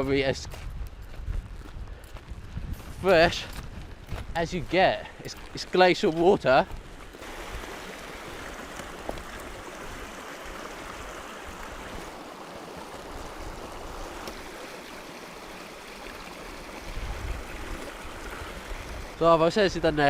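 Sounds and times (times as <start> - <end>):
stream water rushing: 4.7 - 20.0.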